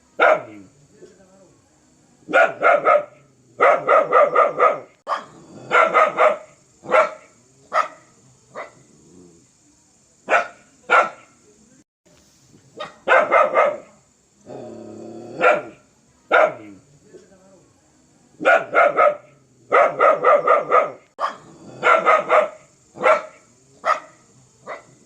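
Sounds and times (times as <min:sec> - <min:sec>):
dog barking fiercely: 0:00.2 - 0:00.6, 0:02.3 - 0:08.8, 0:10.3 - 0:11.3, 0:12.8 - 0:14.0, 0:15.4 - 0:16.7, 0:18.4 - 0:25.0
dog growling low: 0:08.8 - 0:09.5, 0:14.4 - 0:15.7, 0:21.4 - 0:22.1.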